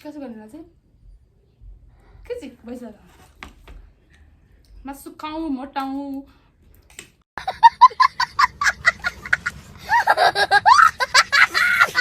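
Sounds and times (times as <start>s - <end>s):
women laughing: 7.4s - 12.0s.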